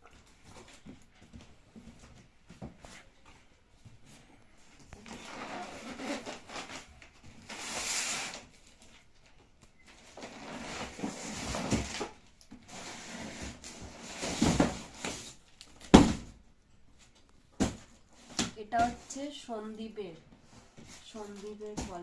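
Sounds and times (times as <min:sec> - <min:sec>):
packaging rustling and scraping: 0:04.2 - 0:15.9, 0:20.4 - 0:22.0.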